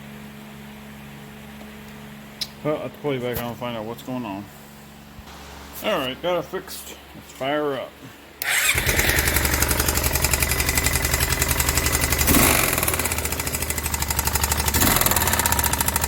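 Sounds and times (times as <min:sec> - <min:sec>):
atv engine running: 0:08.4 - 0:16.0
engine revving: 0:08.4 - 0:16.0
engine knock: 0:08.8 - 0:16.0.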